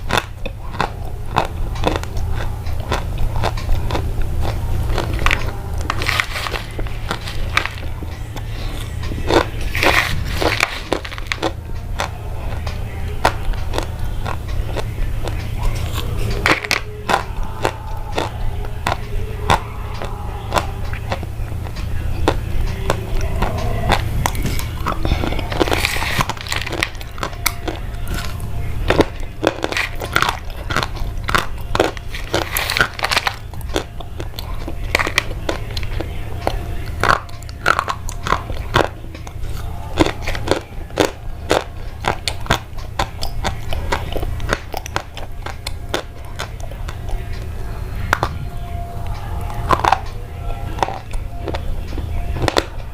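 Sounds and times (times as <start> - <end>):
crisp crunches and crackles: 0.0 - 21.2, 22.2 - 48.4
steady low hum: 0.0 - 52.9.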